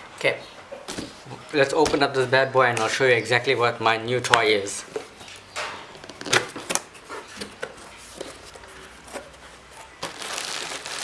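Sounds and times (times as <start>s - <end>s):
packaging crinkling: 10.0s - 11.0s.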